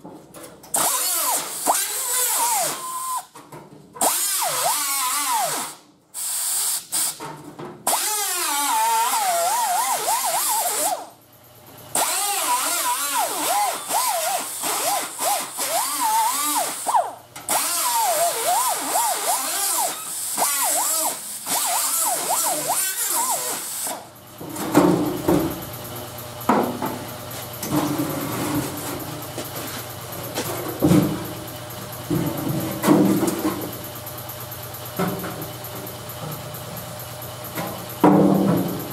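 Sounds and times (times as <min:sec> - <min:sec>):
die grinder cutting sheet metal: 0:00.8 - 0:03.2, 0:04.0 - 0:07.2, 0:07.9 - 0:11.1, 0:11.9 - 0:24.0.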